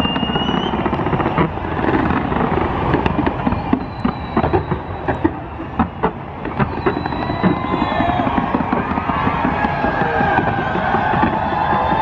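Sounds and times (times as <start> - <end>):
fireworks crackling: 0.0 - 12.0
sharp firework pops: 0.0 - 12.0.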